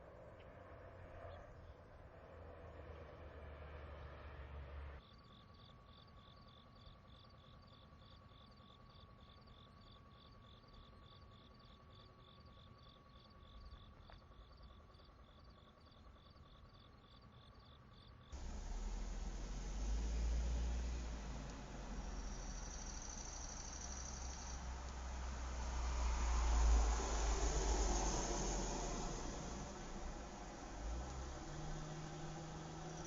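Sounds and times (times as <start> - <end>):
faint steady tone: 0.0 - 33.0
crickets chirping: 5.0 - 33.0
low rumbling noise: 18.4 - 33.0
rushing noise: 18.4 - 33.0.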